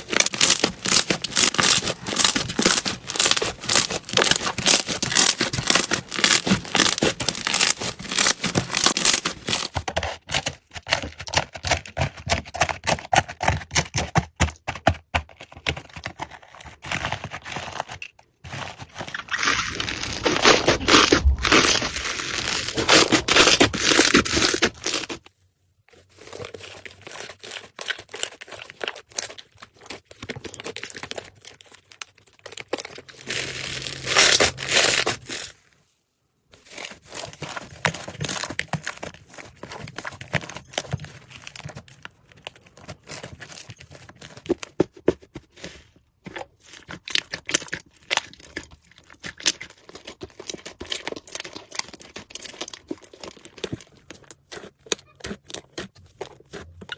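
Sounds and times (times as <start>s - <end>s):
slime crackling and popping: 0.0s - 9.8s, 19.1s - 25.2s.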